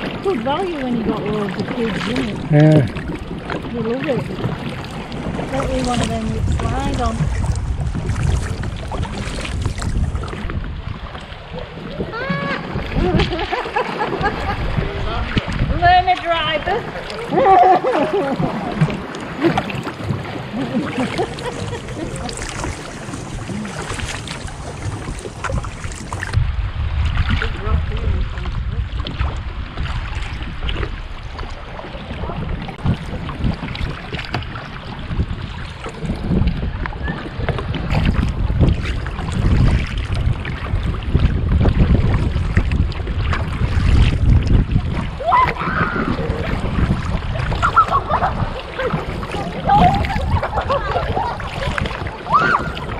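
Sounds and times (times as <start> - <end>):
paddles splashing in water: 0.0 - 52.9
wind rumbling on microphone: 0.0 - 52.9.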